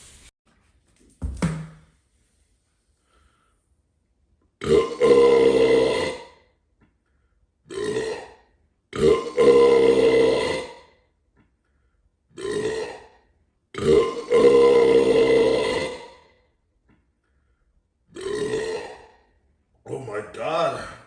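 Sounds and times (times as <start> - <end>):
man burping: 4.6 - 6.4, 7.7 - 10.9, 12.3 - 16.3, 18.1 - 19.3.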